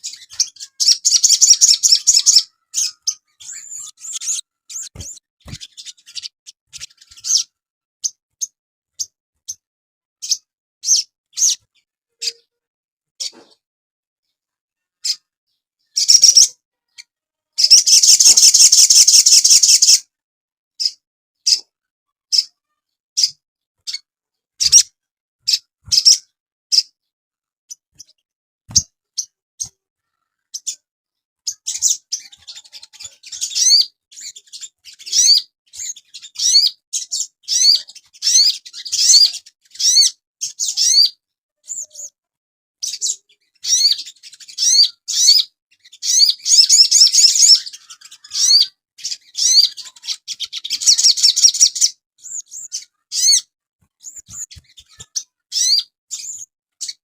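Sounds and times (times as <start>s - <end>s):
bird harsh rattling call: 17.6s - 20.0s
short high bird chirps: 17.6s - 20.0s.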